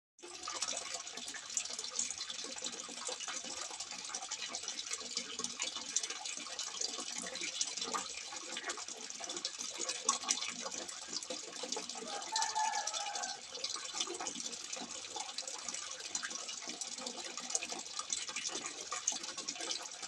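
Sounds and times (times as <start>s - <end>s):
water pouring and splashing: 0.2s - 20.0s.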